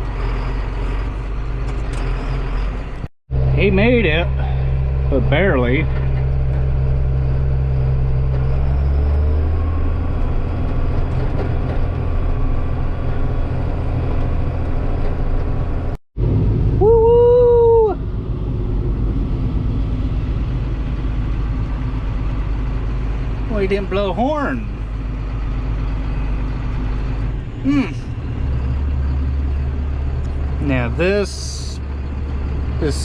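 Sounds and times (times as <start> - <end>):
vehicle engine rumbling: 0.0 - 33.0
man whooping: 16.8 - 18.0.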